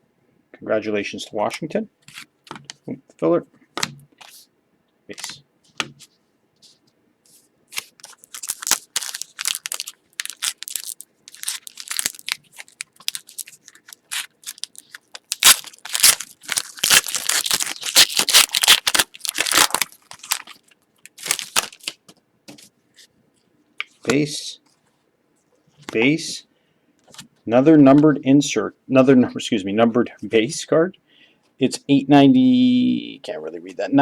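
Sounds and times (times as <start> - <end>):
foil wrapper tearing and crinkling: 7.7 - 22.0.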